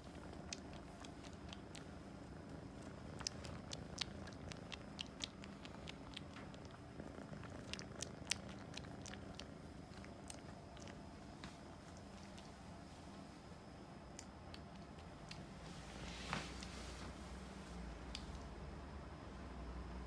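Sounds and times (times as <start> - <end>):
kitten purring: 0.0 - 13.1.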